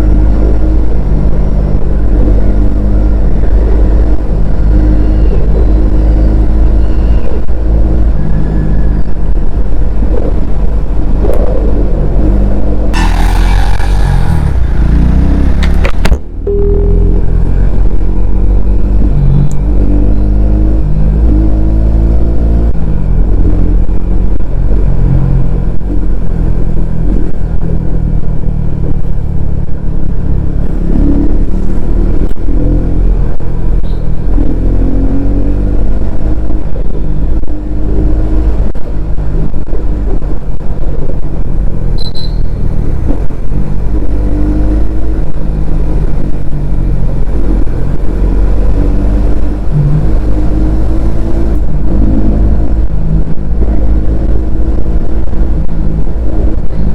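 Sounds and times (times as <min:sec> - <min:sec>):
motorcycle engine revving: 0:11.1 - 0:24.2, 0:41.8 - 0:56.9.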